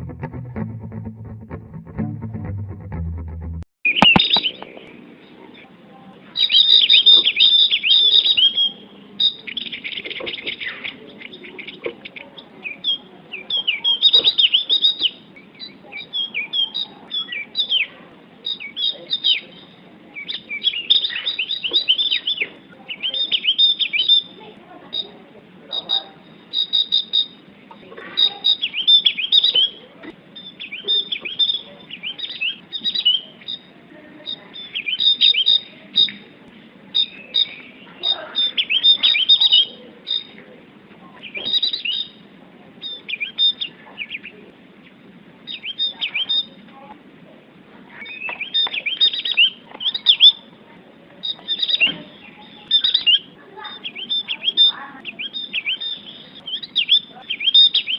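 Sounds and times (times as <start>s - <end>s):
bird chirping high notes: 3.9s - 4.6s.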